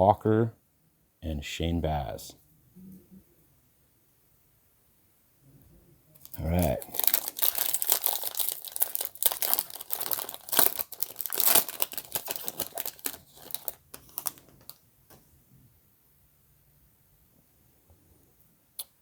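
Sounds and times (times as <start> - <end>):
wrapper tearing and crinkling: 6.2 - 14.8.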